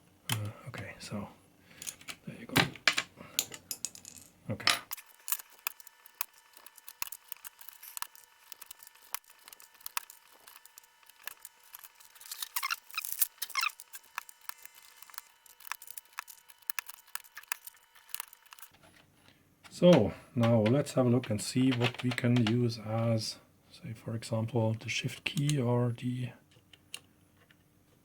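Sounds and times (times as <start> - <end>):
plastic keycaps clicking and rattling: 20.4 - 22.6.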